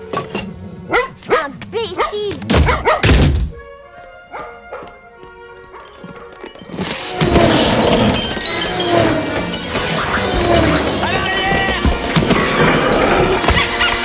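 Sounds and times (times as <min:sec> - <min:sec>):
heavy thunks: 0:02.4 - 0:03.7
comic pitch sweeps: 0:06.9 - 0:14.0.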